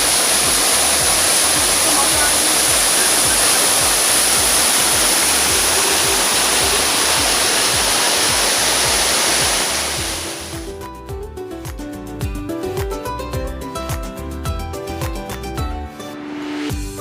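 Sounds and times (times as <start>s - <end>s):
waterfall rushing: 0.0s - 10.7s
music with low beat: 0.0s - 17.0s.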